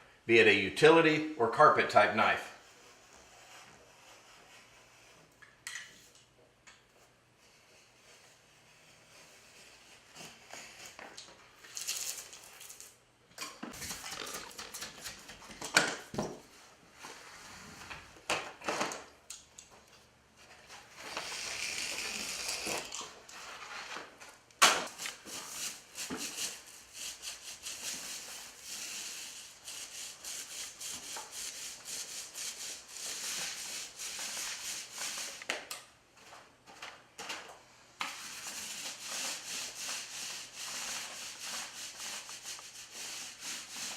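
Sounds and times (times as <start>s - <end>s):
utility knife cutting and scraping: 21.0s - 23.1s.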